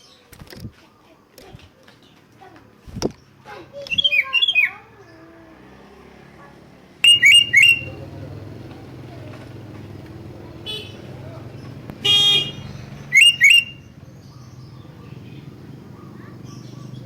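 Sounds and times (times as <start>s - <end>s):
bird warbling and calling: 3.5s - 5.4s, 7.0s - 17.0s.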